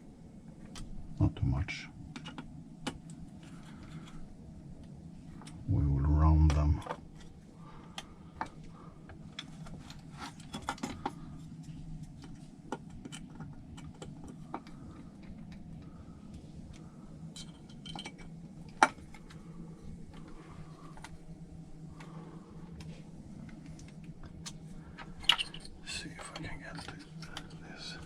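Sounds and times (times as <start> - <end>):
low hum: 0.0 - 28.0
clicks of small parts and tools: 24.4 - 25.8.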